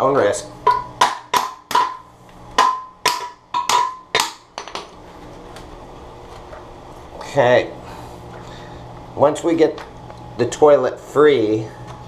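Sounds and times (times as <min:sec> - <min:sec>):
hammer striking porcelain: 0:00.7 - 0:04.8.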